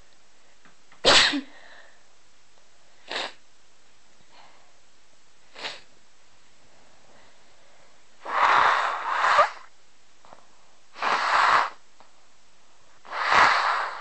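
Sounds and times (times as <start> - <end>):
person sneezing: 1.0 - 1.8, 3.1 - 3.4, 5.6 - 5.9, 8.2 - 9.7.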